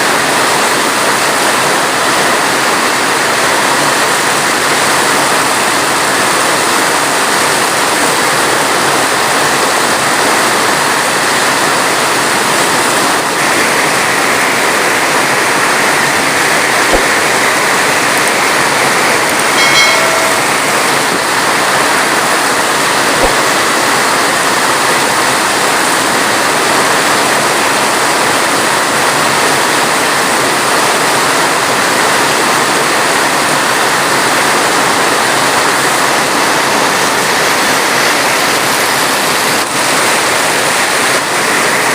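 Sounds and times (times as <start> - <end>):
heavy rain falling: 0.0 - 41.9
faint pitched tone: 19.0 - 21.6.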